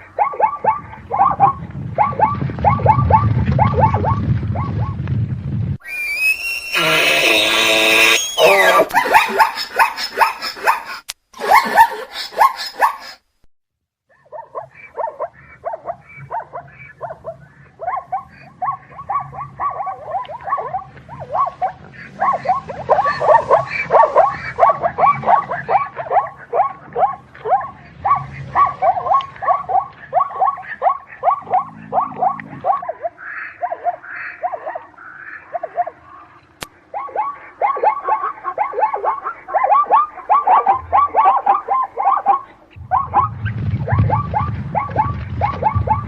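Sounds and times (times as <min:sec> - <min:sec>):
zebra barking yelps: 0:00.0 - 0:05.0, 0:05.9 - 0:13.2, 0:14.1 - 0:46.0
low rumble: 0:42.7 - 0:46.0.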